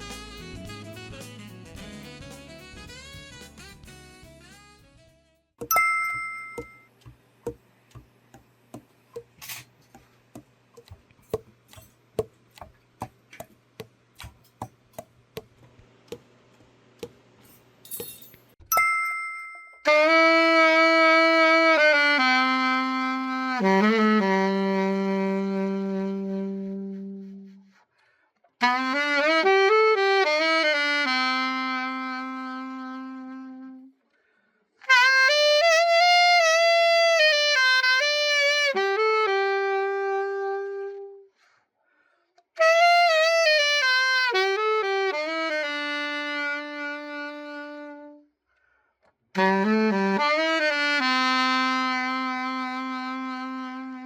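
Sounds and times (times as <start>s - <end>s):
alto saxophone playing solo: 0.0s - 5.3s, 19.9s - 27.8s, 28.6s - 34.0s, 34.8s - 41.3s, 42.6s - 48.3s, 49.4s - 54.0s.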